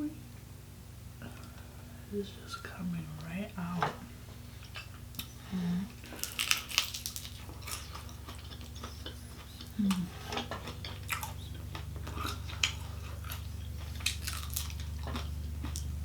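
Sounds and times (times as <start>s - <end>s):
steady low hum: 0.0s - 16.0s
chewing with wet smacks: 6.1s - 16.0s.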